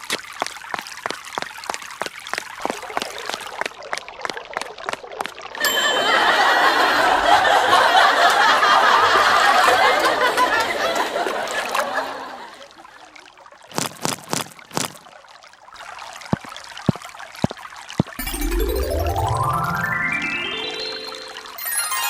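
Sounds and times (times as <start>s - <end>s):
water pouring and trickling: 0.0s - 6.0s, 12.6s - 22.0s.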